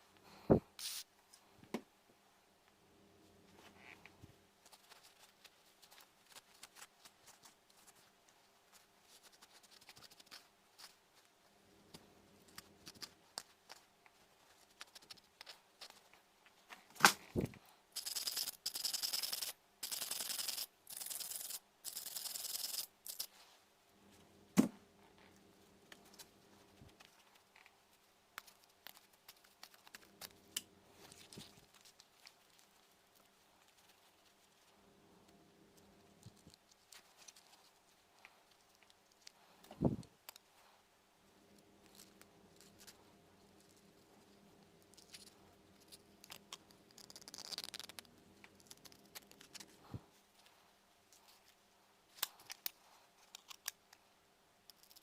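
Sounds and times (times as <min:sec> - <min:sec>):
short hissing bursts: 0:00.8 - 0:01.1
handling noises with clicks and rubbing: 0:02.7 - 0:55.0.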